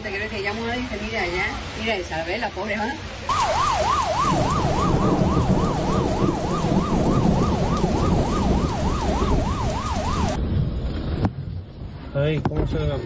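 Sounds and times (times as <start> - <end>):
emergency siren yelping: 3.3 - 10.4
steady rushing noise: 3.3 - 10.6.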